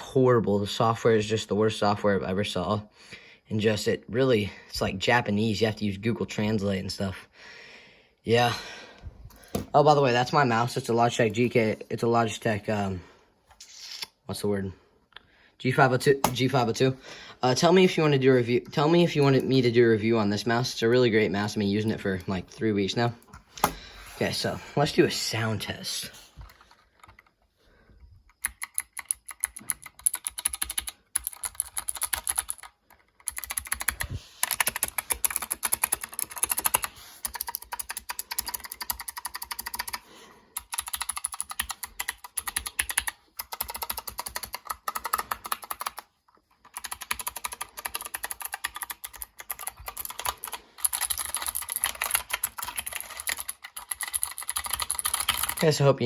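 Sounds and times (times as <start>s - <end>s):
fast typing on clicky keyboard: 28.3s - 55.8s.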